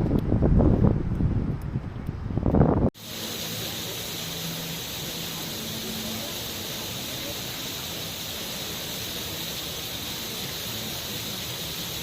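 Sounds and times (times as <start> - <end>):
steady hissing noise: 3.0 - 12.0.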